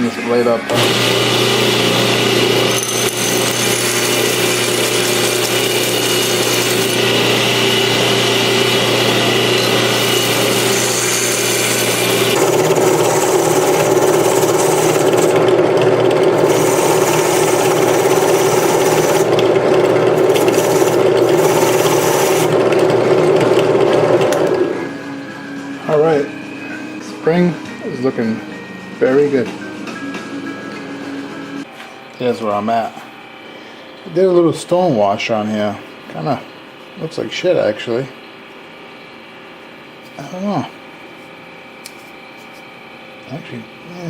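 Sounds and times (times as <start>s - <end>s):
power tool motor hum: 0.7s - 24.8s.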